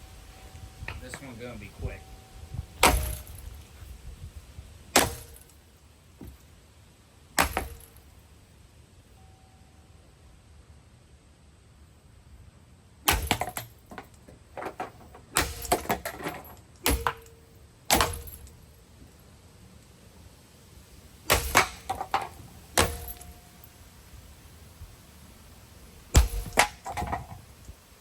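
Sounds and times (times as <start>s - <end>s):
metallic ring: 0.0s - 3.9s, 15.4s - 18.6s, 21.3s - 23.8s, 26.1s - 27.5s
sharp blows smashing a fan: 2.8s - 3.6s, 4.9s - 5.5s, 7.4s - 8.0s, 13.1s - 13.7s, 15.3s - 17.3s, 17.9s - 18.5s, 21.3s - 23.4s, 26.1s - 27.4s.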